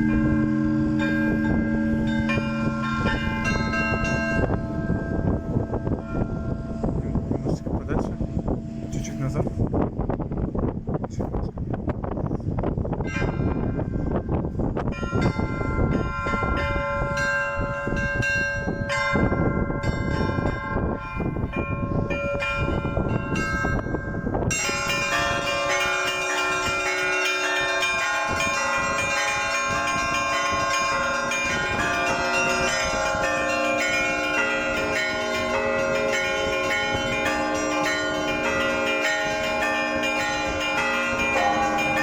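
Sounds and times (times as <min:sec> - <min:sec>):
church bells ringing: 0:00.0 - 0:10.3, 0:13.0 - 0:42.0
low rumble: 0:00.0 - 0:25.6.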